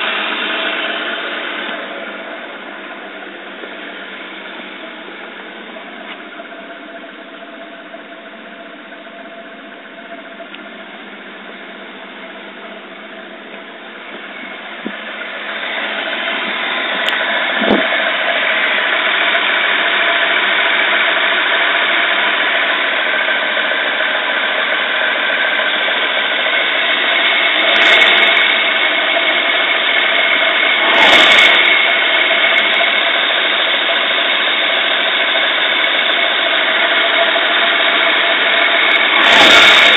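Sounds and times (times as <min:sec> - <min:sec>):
car engine idling roughly: 0:00.0 - 0:39.9
short engine knocks: 0:14.8 - 0:15.1.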